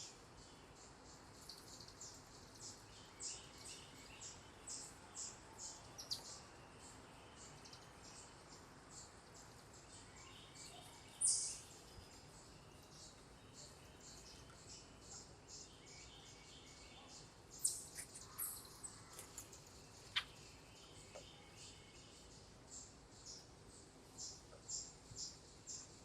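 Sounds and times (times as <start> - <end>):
outdoor background hiss: 0.0 - 26.0
small songbirds chirping: 0.0 - 26.0.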